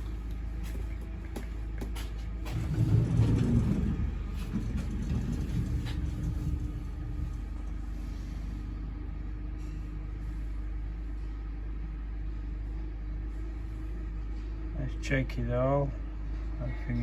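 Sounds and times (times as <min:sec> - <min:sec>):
low vehicle rumble: 0:00.0 - 0:17.0.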